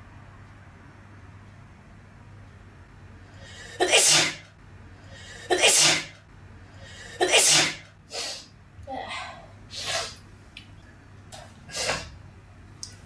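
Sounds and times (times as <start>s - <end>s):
person sneezing: 3.6s - 4.5s, 5.5s - 6.2s, 7.2s - 8.5s, 9.7s - 10.2s, 11.7s - 12.2s.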